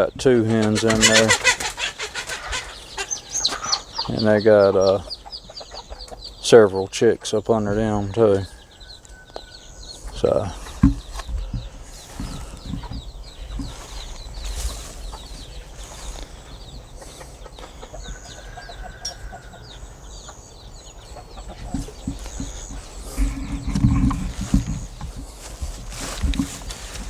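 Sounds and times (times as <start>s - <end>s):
chicks peeping: 0.0s - 27.0s
hens clucking: 0.0s - 27.0s
microphone handling thumps: 10.0s - 16.4s, 21.4s - 27.0s.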